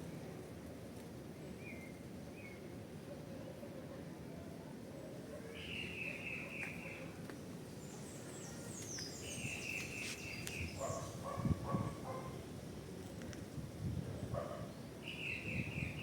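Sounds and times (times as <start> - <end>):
songbirds calling: 5.6 - 12.2, 14.3 - 16.0.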